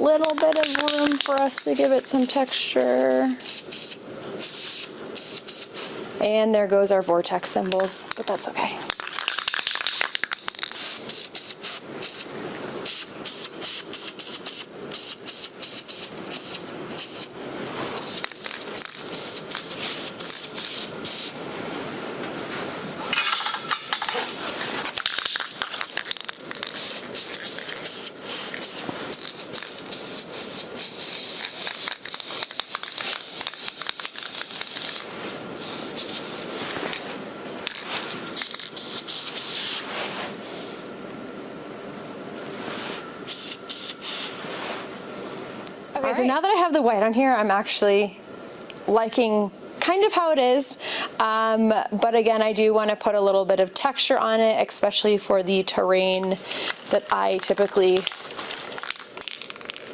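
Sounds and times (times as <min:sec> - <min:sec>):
spray-paint can hissing: 0:00.7 - 0:05.9, 0:10.6 - 0:12.3, 0:12.9 - 0:17.3, 0:18.0 - 0:21.4, 0:26.6 - 0:36.5, 0:38.4 - 0:39.8, 0:43.3 - 0:44.3.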